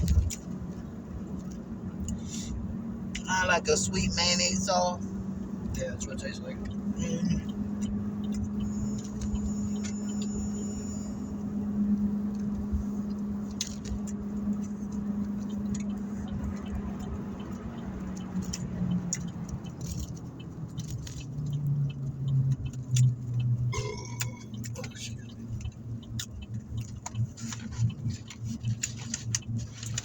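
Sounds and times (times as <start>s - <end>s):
car cabin hum: 0.0s - 30.0s
person eating: 23.8s - 25.4s.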